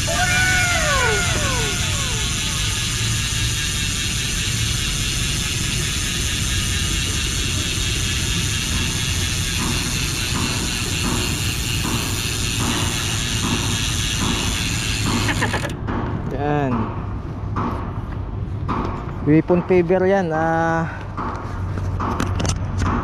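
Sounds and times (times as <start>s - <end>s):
bike hub ratcheting: 0.0s - 15.8s.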